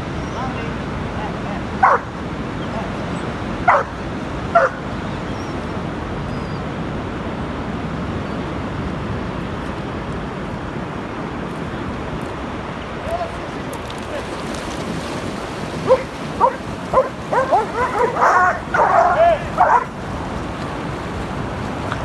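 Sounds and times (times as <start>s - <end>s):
sea surf: 0.0s - 22.0s
wind: 0.0s - 22.0s
dog barking: 1.8s - 2.2s, 3.6s - 4.8s, 15.8s - 20.0s.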